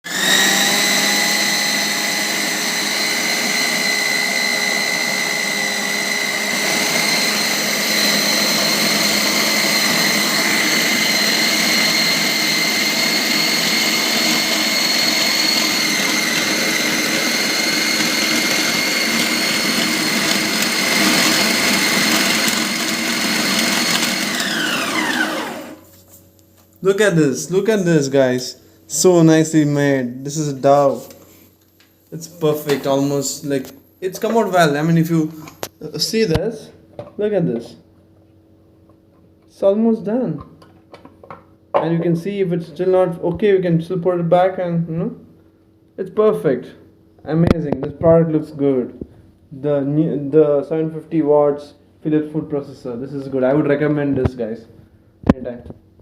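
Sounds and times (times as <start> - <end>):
mixer grinder whining: 0.0 - 26.1, 26.8 - 36.4.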